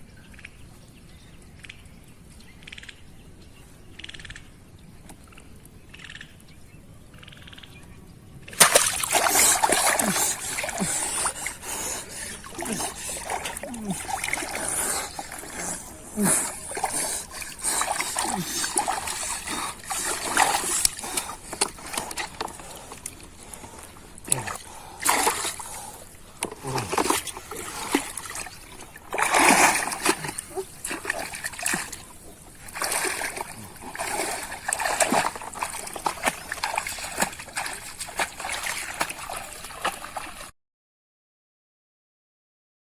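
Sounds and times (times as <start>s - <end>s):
water splashing and sloshing: 8.4s - 40.5s.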